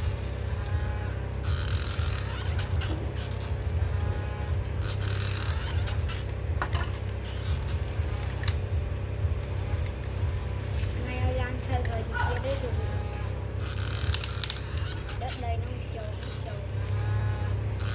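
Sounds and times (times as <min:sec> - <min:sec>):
excavator motor hum: 0:00.0 - 0:17.9.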